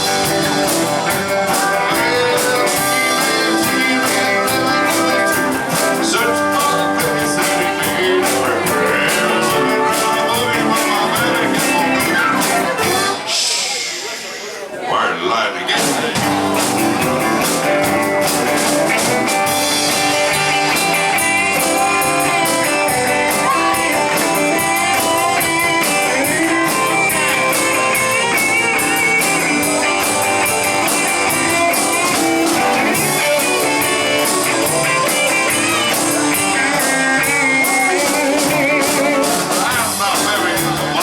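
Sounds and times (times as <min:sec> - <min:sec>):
backing chords: 0:00.0 - 0:13.3, 0:16.1 - 0:41.0
guitar lead with bending notes: 0:00.0 - 0:13.4, 0:16.0 - 0:41.0
drum kit beat: 0:00.0 - 0:14.5, 0:15.8 - 0:41.0.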